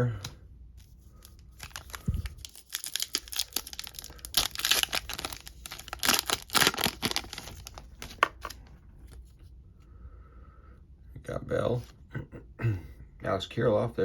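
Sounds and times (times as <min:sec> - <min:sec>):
foil wrapper tearing and crinkling: 0:00.8 - 0:08.5.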